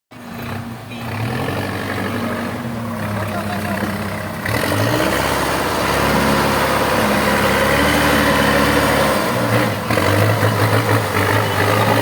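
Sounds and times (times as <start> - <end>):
diesel engine running loud: 0.2 - 12.0.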